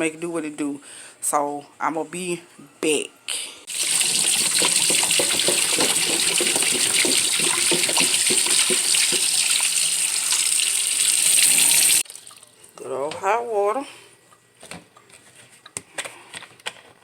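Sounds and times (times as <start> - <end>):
tap water running and splashing: 3.7 - 12.8.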